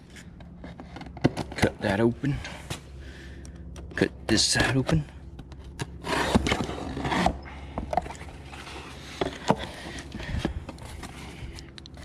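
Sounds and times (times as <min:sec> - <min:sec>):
blade ripping cardboard: 0:05.8 - 0:07.4.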